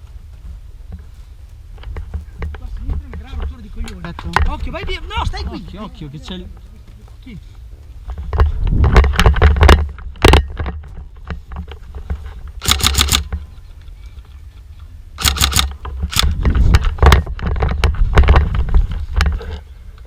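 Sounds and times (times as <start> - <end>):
camera handling rumble: 8.0 - 20.0
airsoft gun shots: 12.6 - 13.3, 15.2 - 16.4.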